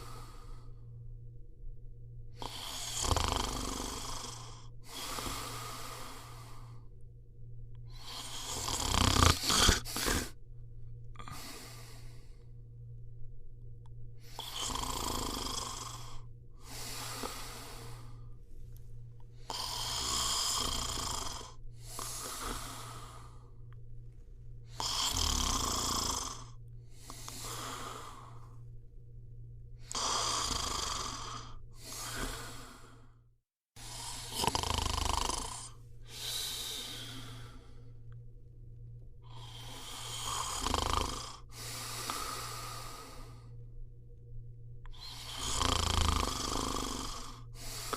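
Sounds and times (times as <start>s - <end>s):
person snoring: 0.0s - 0.9s, 2.4s - 6.9s, 7.9s - 10.4s, 11.2s - 12.5s, 14.2s - 18.4s, 19.4s - 23.7s, 24.6s - 28.7s, 29.8s - 33.2s, 33.8s - 38.2s, 39.2s - 43.6s, 44.9s - 47.9s
steady low hum: 0.0s - 47.9s.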